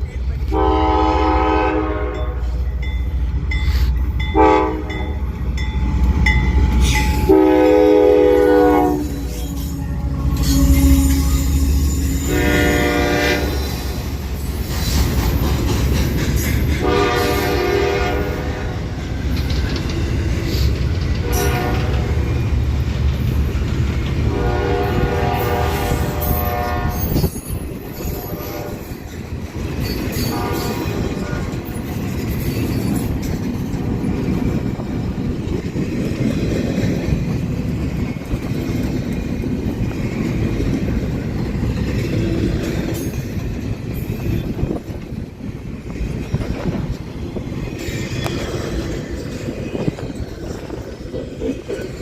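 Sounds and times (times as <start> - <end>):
freight train rumble: 0.0 - 52.0
locomotive air horn blasts: 0.5 - 2.6, 4.3 - 5.0, 7.3 - 9.6, 10.4 - 13.7, 16.8 - 18.8, 21.2 - 22.3, 24.3 - 27.2, 28.1 - 28.8, 30.3 - 31.6.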